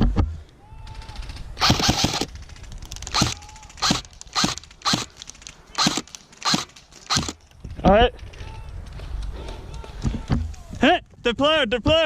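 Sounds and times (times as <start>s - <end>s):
airsoft gun firing: 1.1s - 7.4s.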